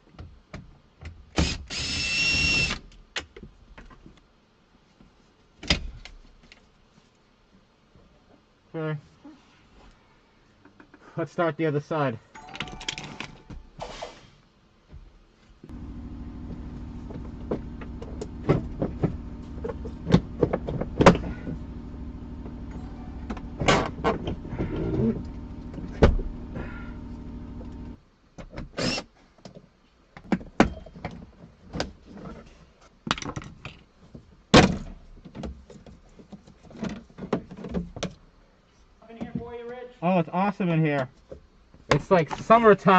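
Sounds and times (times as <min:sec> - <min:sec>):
steady machine hum: 0:15.6 - 0:28.0.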